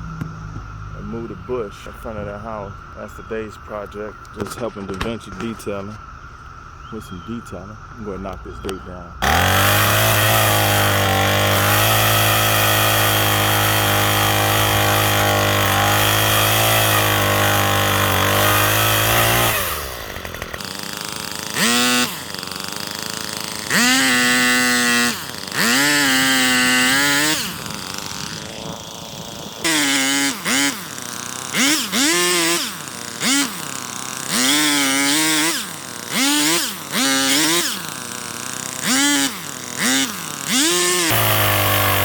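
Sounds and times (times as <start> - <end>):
power saw running: 9.2 - 42.0.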